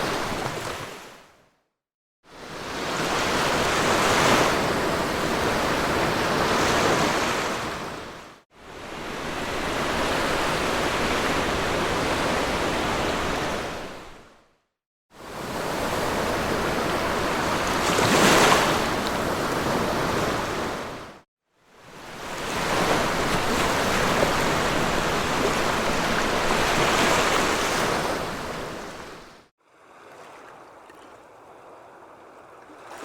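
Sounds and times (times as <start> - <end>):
sea waves breaking on beach: 0.0 - 1.2, 15.2 - 21.2, 21.8 - 33.0.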